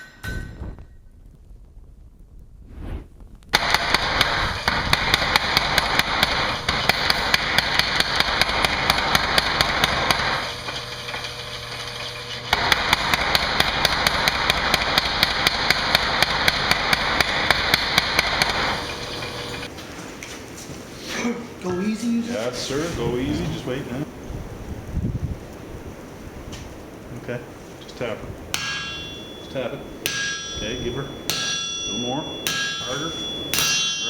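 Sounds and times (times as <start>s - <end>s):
hammer blows on hot steel: 3.5s - 11.4s, 12.5s - 19.7s, 28.4s - 34.0s.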